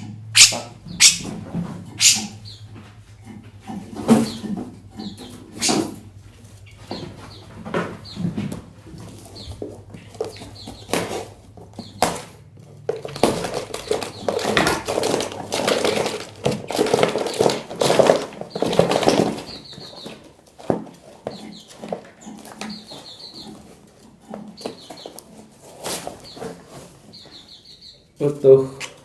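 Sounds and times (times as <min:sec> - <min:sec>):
knocks and rustling: 0:00.0 - 0:27.4
high bird chirps: 0:00.3 - 0:01.3, 0:02.0 - 0:02.7, 0:19.4 - 0:20.2, 0:21.3 - 0:23.6, 0:27.1 - 0:28.1.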